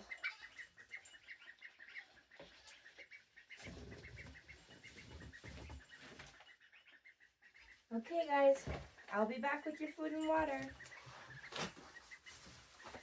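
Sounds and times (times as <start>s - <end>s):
ducklings peeping: 0.0s - 13.0s
muffled handling rustle: 8.0s - 13.0s.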